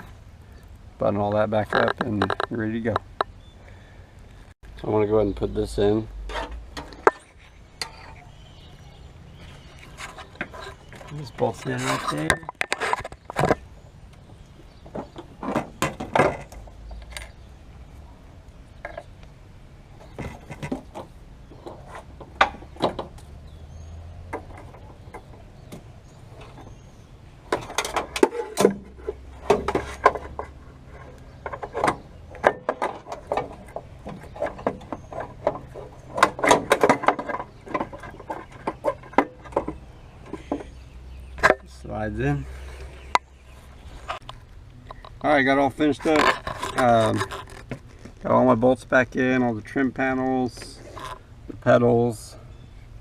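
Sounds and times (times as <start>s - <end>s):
hand tools clanking and knocking: 1.3s - 3.4s, 4.8s - 13.7s, 14.7s - 17.4s, 20.0s - 44.3s.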